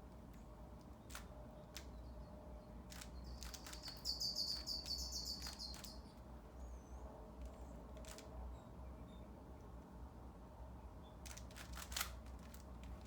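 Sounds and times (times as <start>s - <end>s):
puzzle cube clicking: 2.9s - 4.0s
bird twittering: 3.2s - 7.0s.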